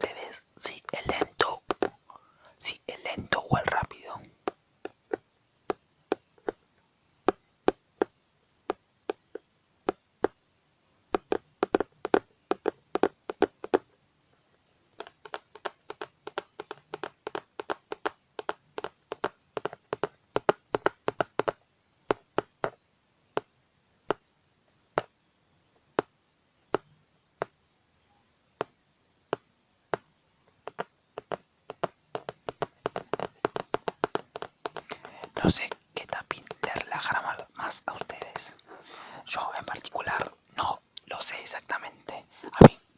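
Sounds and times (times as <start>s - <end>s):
fingers tapping on keyboard: 0.0s - 2.0s, 3.0s - 6.6s, 11.1s - 13.9s, 15.0s - 22.8s, 29.3s - 42.8s.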